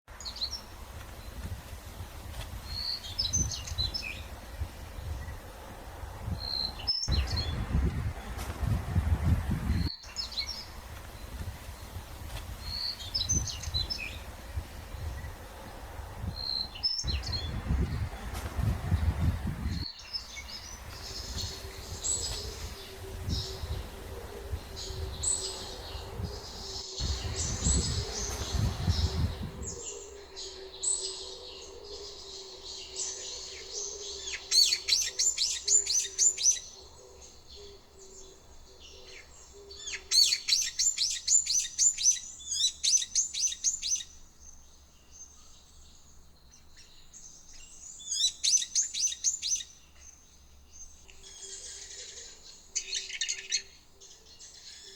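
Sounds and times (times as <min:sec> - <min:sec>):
songbirds chirping: 0:00.1 - 0:54.9
low wind rumble on microphone: 0:00.2 - 0:30.0.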